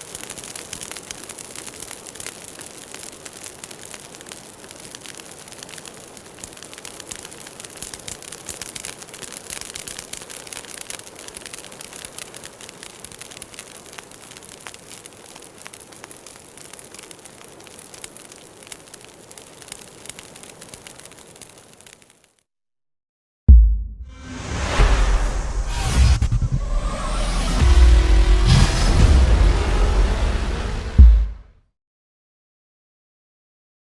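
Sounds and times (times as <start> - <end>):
bonfire crackling and popping: 0.0 - 22.4, 24.1 - 31.5
soft fire hiss: 0.0 - 22.4.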